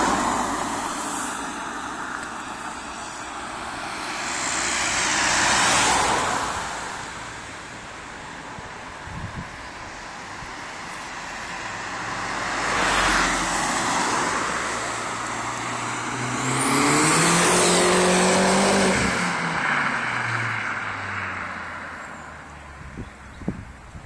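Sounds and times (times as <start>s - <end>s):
car engine accelerating: 15.7s - 20.6s.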